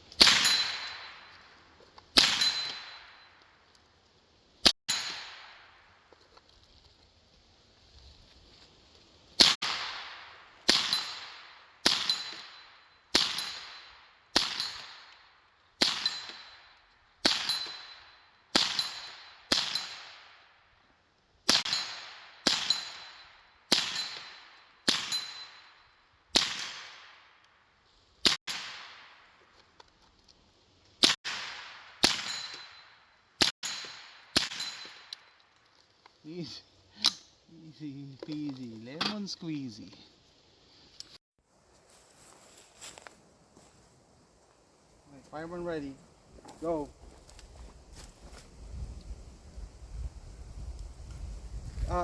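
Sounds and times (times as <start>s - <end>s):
rifle gunshots echoing: 9.4s - 12.4s, 26.4s - 27.2s, 31.0s - 32.5s.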